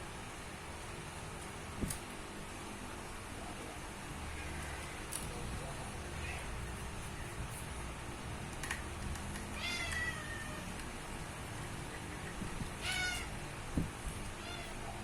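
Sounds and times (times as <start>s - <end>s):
cat meowing: 9.5s - 10.7s, 12.8s - 13.4s, 14.4s - 15.0s.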